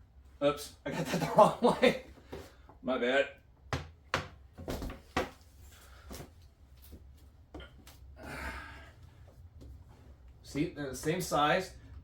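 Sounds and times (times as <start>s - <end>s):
cabinet door knocks and taps: 3.7s - 5.3s.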